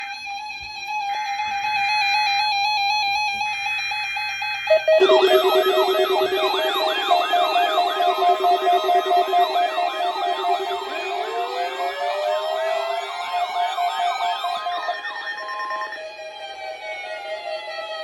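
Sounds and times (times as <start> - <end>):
electronic synth music: 4.8 - 16.0
siren-like wail: 5.0 - 16.0.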